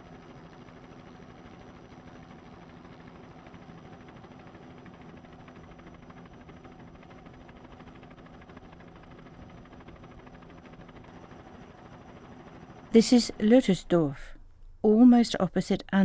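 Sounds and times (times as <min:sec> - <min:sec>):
steady mechanical hum: 0:07.6 - 0:16.0.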